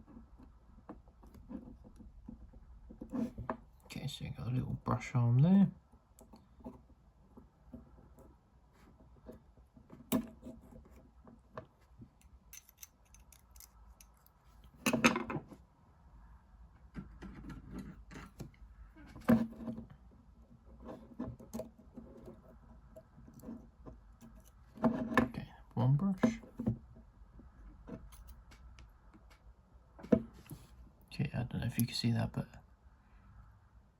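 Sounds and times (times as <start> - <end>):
tools clicking on workbench: 12.2 - 14.3.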